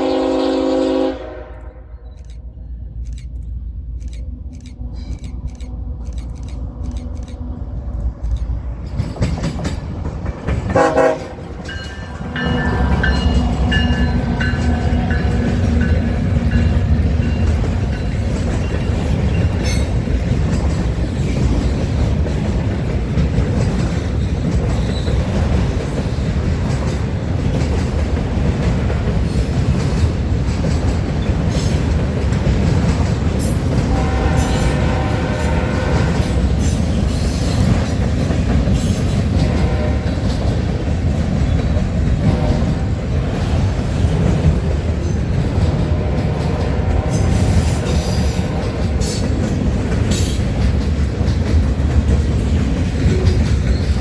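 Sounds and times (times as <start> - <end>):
train horn blast: 0.0 - 2.1, 10.7 - 11.5, 33.8 - 36.6, 39.2 - 40.4, 45.8 - 49.3
rumble of rolling railcars: 0.0 - 54.0
wheels clicking over rail joints: 1.6 - 34.8, 36.0 - 54.0.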